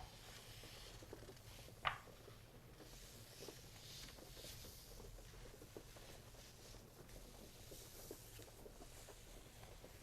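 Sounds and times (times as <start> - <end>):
gentle rain: 0.0 - 10.0.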